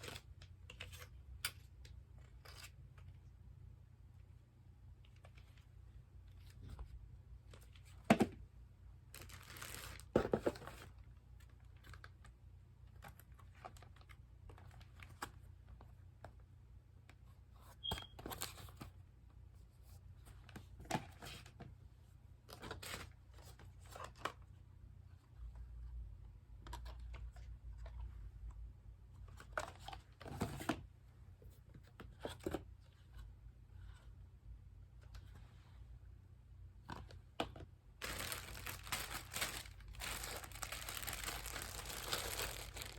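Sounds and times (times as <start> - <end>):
packaging rustling and tearing: 9.2 - 10.9, 38.0 - 42.9.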